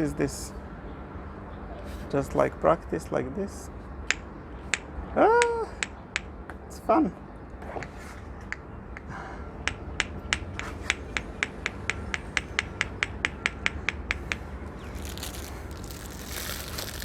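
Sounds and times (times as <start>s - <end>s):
rustling handling noise: 14.7s - 17.0s.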